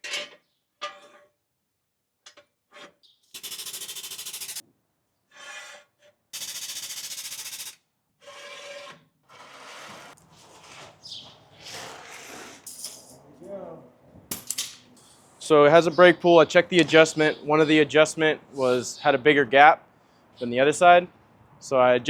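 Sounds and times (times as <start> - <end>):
mechanical rasping rattle: 3.3 - 4.6.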